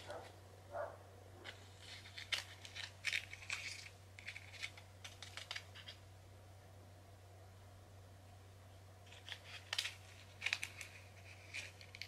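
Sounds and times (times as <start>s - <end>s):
plastic clicking and crinkling: 1.4s - 6.0s, 9.0s - 12.0s.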